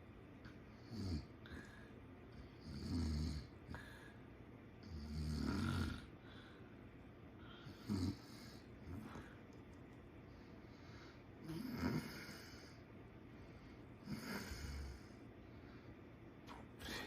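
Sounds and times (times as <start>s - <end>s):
person snoring: 2.6s - 3.8s, 4.8s - 6.1s, 7.6s - 9.2s, 11.4s - 12.8s, 14.0s - 15.2s.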